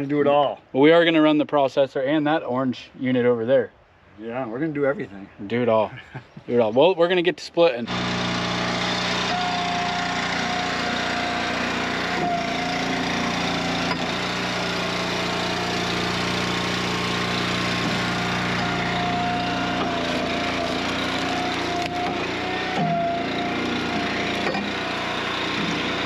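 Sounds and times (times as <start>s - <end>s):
hydraulic whine: 7.8s - 26.0s
small gas engine running: 7.8s - 26.0s.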